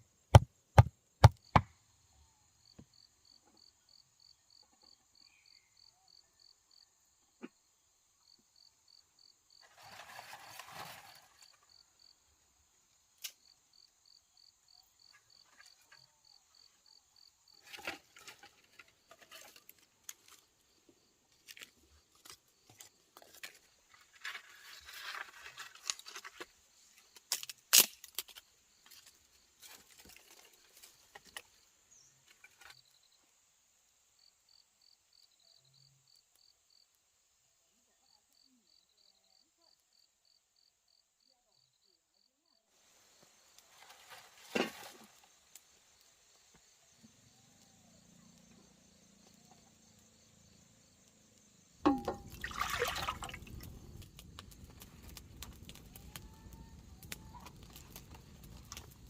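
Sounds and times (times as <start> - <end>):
wood chopping: 0.3 - 1.7, 51.9 - 52.4
rustling of materials: 9.6 - 11.6, 21.4 - 31.4
continuous high hiss: 42.7 - 59.0
insects chirping in pulses: 45.1 - 59.0.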